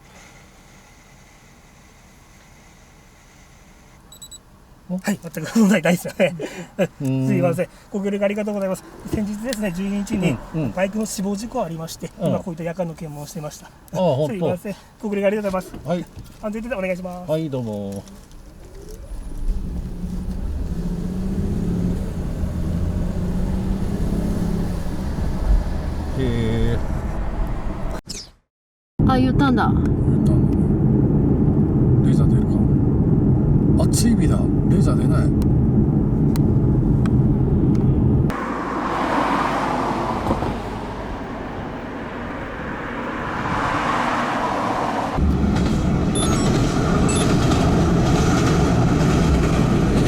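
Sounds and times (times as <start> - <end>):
car engine pulling away: 17.6 - 28.0, 30.6 - 50.0.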